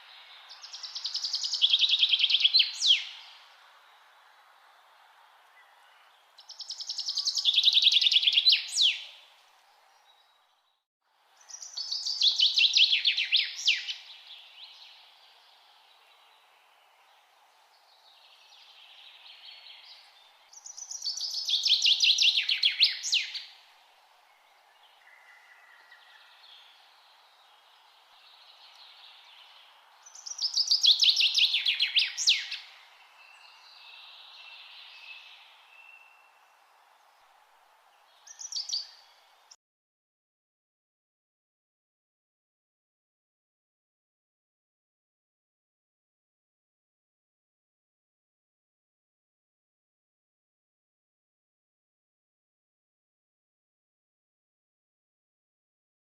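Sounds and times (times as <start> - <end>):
steady background hiss: 0.0 - 10.0, 11.2 - 39.6
songbird singing: 0.0 - 39.6
faint bird calls: 24.4 - 27.6.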